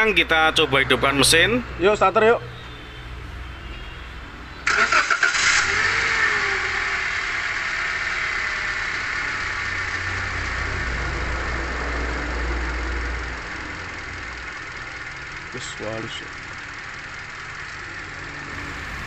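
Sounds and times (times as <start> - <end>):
car engine idling: 0.0 - 2.4, 4.5 - 19.0
car engine cranking: 4.6 - 19.0.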